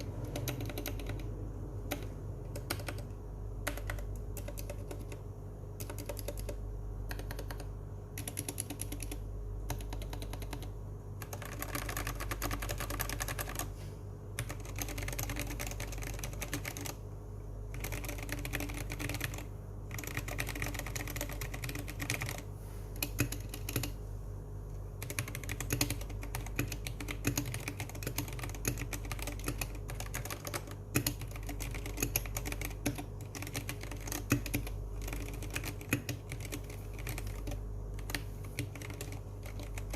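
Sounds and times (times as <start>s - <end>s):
mechanical keyboard typing: 0.0s - 13.7s, 14.4s - 17.0s, 17.7s - 24.0s, 25.0s - 39.9s.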